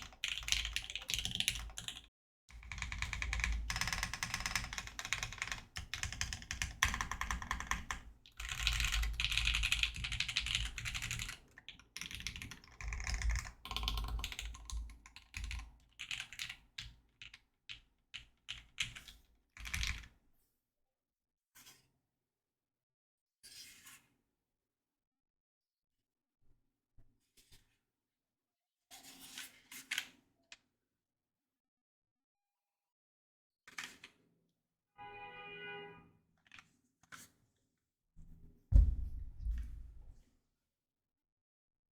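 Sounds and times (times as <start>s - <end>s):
mechanical keyboard clatter: 0.0s - 2.0s, 2.6s - 16.6s.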